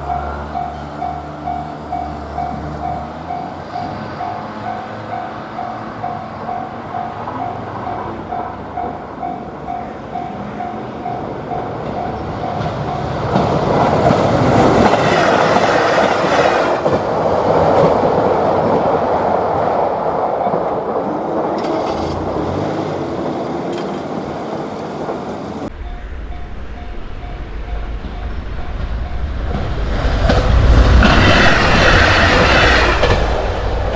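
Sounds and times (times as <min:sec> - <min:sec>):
level-crossing warning bell: 0:00.0 - 0:16.6, 0:20.2 - 0:22.1, 0:25.7 - 0:33.9
train wheel clatter: 0:00.0 - 0:19.6, 0:25.7 - 0:33.9.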